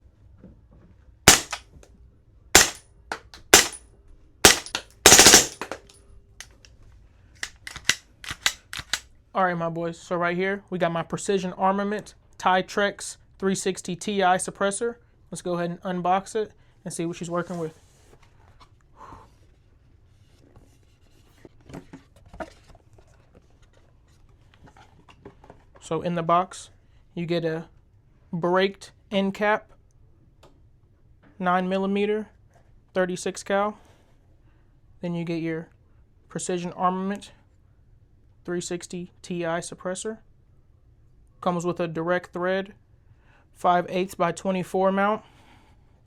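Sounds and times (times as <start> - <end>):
suppressed gunshots: 1.3 - 1.6, 2.6 - 2.8, 3.4 - 3.8, 4.5 - 5.8
cardboard rustling and scraping: 20.2 - 25.5.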